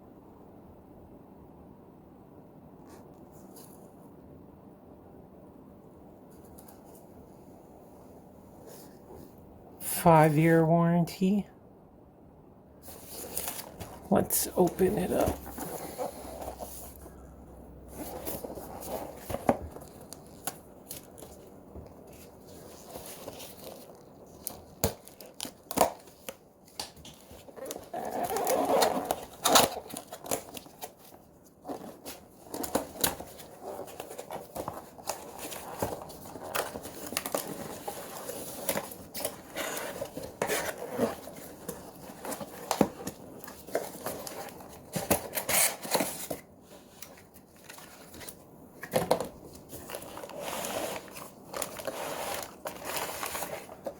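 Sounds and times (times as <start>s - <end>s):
cardboard packaging tearing and crinkling: 12.9s - 17.2s, 17.9s - 53.9s.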